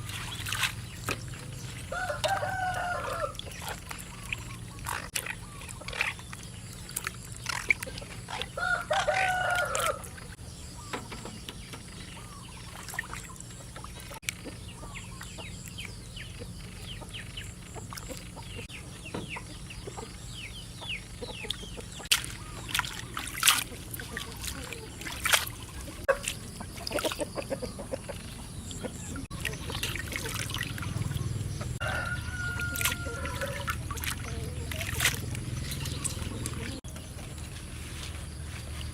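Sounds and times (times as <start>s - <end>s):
rooster crowing: 1.9s - 3.4s, 8.6s - 10.2s, 31.8s - 33.7s.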